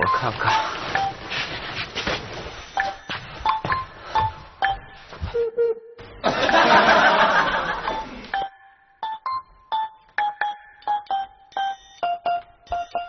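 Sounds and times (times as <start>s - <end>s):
staccato keyboard music: 2.8s - 13.0s.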